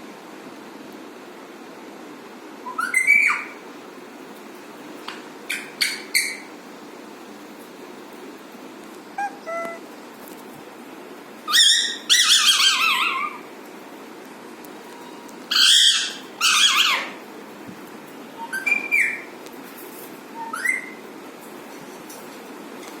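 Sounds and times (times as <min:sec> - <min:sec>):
parakeet squawking and chirping: 0:02.7 - 0:03.6, 0:05.5 - 0:06.5, 0:09.2 - 0:09.8, 0:11.5 - 0:13.5, 0:15.5 - 0:17.2, 0:18.4 - 0:19.3, 0:20.4 - 0:21.0.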